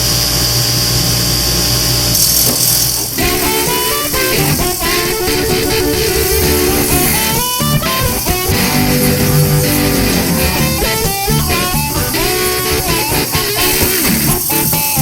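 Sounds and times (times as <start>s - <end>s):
drums keeping a steady beat: 2.5s - 15.0s
guitar music: 3.2s - 15.0s.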